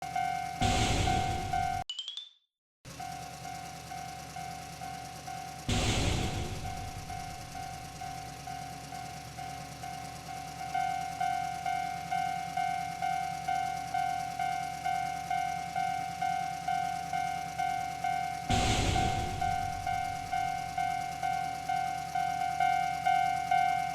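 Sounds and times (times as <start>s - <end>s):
railroad crossing warning bell: 0.0s - 1.8s, 2.9s - 5.7s, 6.5s - 23.9s
low rumble: 0.6s - 1.8s, 5.7s - 8.3s, 18.5s - 21.2s.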